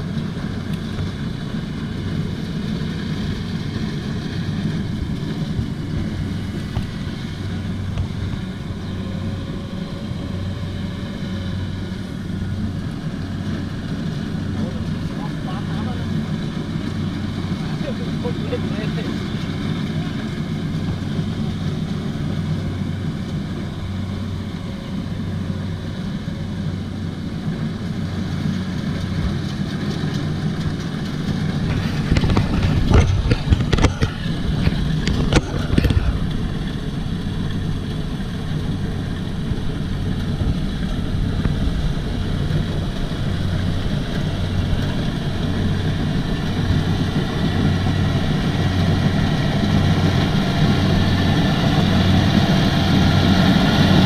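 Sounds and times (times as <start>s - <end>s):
diesel engine running: 0.0s - 54.0s
sharp knocking and clatter: 30.0s - 36.1s.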